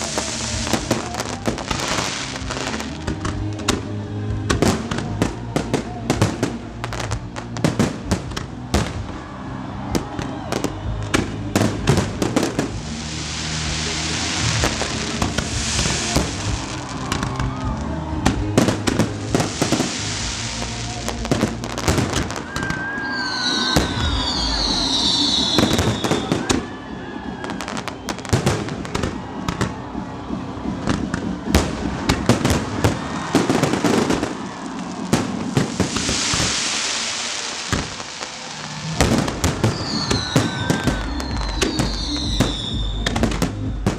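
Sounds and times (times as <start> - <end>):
fireworks bangs and crackles: 0.0 - 43.9
music playing: 0.0 - 43.9
high falling whistles: 22.4 - 28.4, 38.1 - 43.9.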